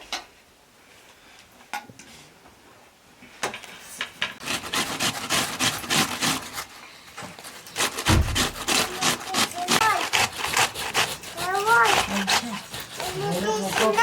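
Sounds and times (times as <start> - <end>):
rough rasping scraping strokes: 4.4 - 14.0.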